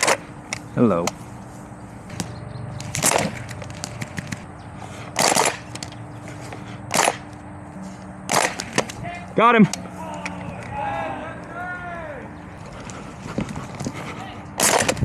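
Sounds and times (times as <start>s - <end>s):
airsoft gun bursts: 5.2s - 5.9s, 6.9s - 7.3s, 8.3s - 8.9s, 14.6s - 15.0s.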